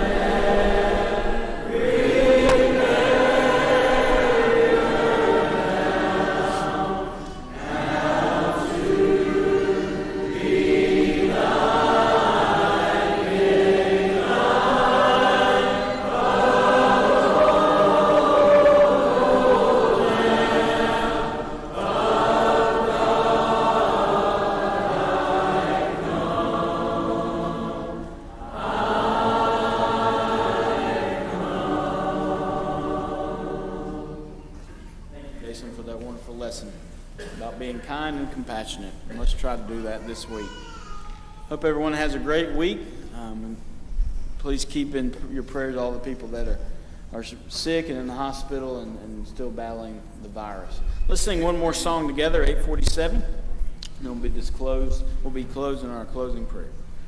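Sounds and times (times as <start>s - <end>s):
congregation singing a hymn: 0.0s - 40.4s.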